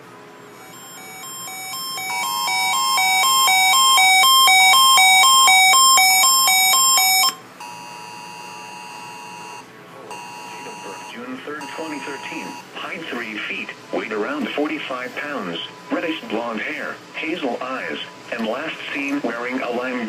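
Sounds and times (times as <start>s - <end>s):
electronic chime melody: 0.6s - 12.6s
two-tone alert tone: 0.6s - 12.6s.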